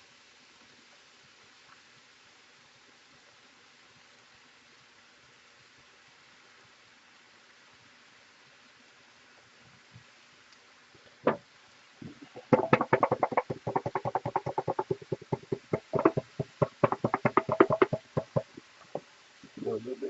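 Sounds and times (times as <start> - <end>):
pepper shaker knock: 12.0 - 19.0.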